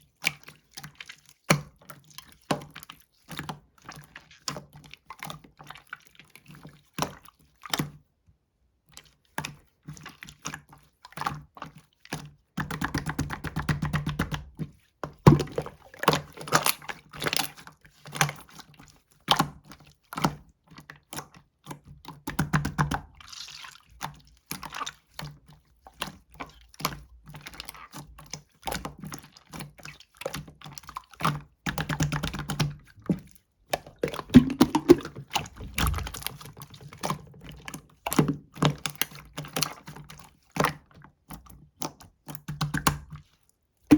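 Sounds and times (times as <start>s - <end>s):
slime squishing with wet clicks: 9.1s - 43.7s.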